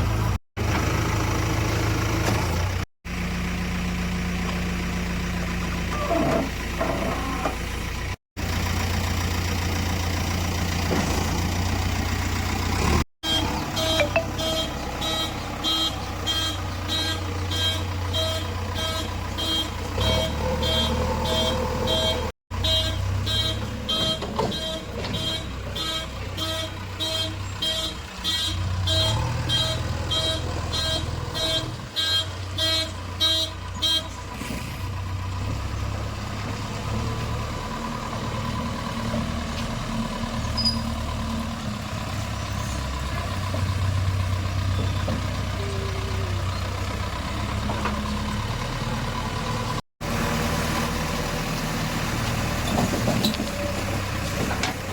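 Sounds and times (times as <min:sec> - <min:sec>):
diesel engine droning: 0:00.0 - 0:54.9
reversing alarm beeping: 0:13.2 - 0:34.1.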